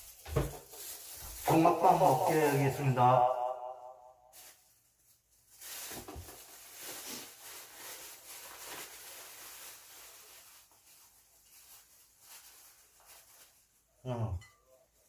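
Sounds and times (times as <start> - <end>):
handling rustling and rubbing: 5.4 - 13.9.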